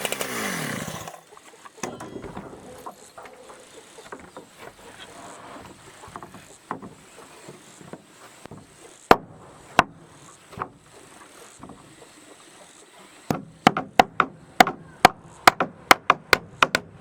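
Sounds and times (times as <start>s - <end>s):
wood clattering: 0.0s - 12.1s
loud sharp knocks on wood: 7.9s - 10.8s, 13.3s - 17.0s.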